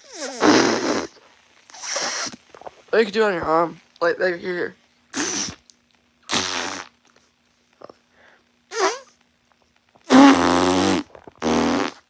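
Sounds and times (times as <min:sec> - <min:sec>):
mouth-made fart raspberry: 0:00.0 - 0:02.8, 0:05.1 - 0:07.0, 0:08.7 - 0:09.2, 0:10.0 - 0:12.0.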